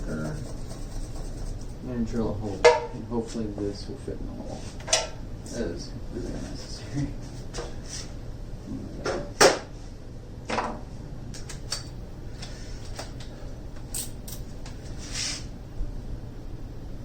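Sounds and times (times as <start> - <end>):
tools and hardware clicking: 13.9 - 14.4.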